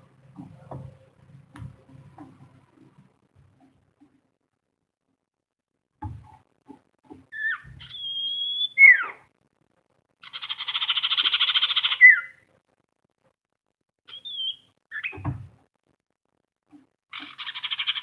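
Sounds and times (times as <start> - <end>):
bird calling whistles and trill: 7.3 - 9.2, 10.9 - 12.4, 14.1 - 15.3.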